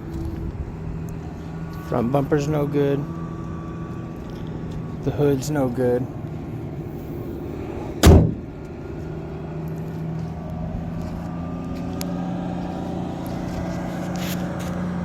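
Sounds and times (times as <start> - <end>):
engine humming: 0.0 - 15.0
loud thump with ring: 8.0 - 8.4.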